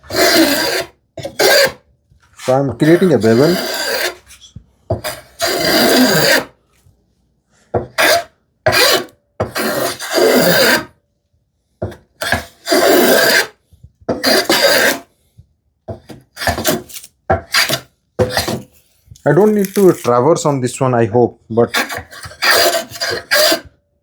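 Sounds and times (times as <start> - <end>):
hand plane rasping on wood: 0.0 - 1.8, 2.4 - 4.3, 4.9 - 6.6, 7.9 - 10.9, 12.2 - 15.1, 21.8 - 23.7.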